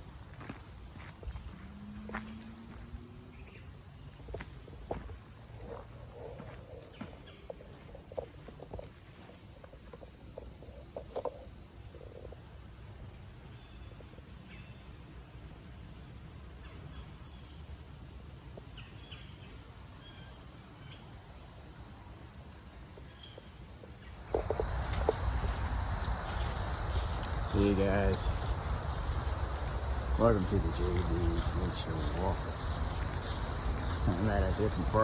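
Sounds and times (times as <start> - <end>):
insects trilling: 0.0 - 35.0
broad rushing noise: 24.3 - 35.0.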